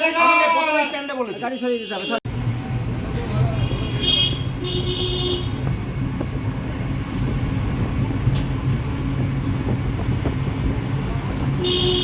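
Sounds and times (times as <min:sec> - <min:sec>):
vehicle engine rumble: 0:02.3 - 0:12.0
horn toots: 0:11.6 - 0:12.0.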